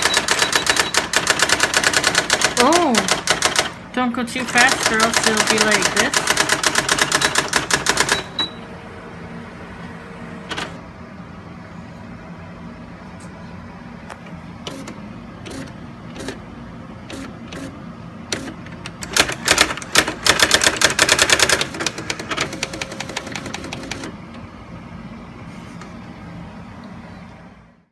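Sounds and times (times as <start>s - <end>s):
electronic typewriter printing: 0.0s - 8.6s, 10.4s - 10.8s, 14.6s - 24.4s.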